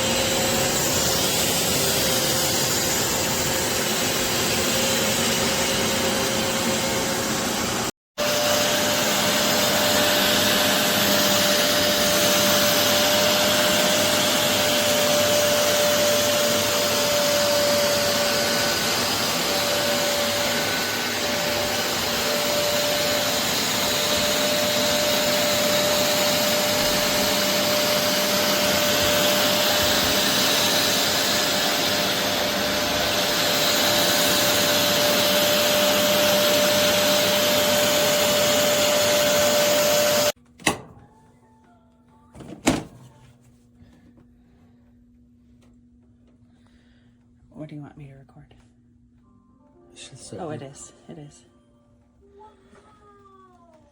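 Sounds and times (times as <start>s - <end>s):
carpet cleaner suction whine: 0.0s - 40.4s.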